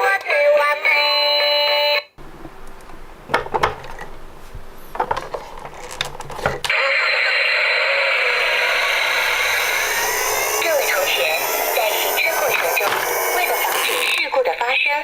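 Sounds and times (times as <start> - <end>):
engine sound effect: 7.0 - 14.3.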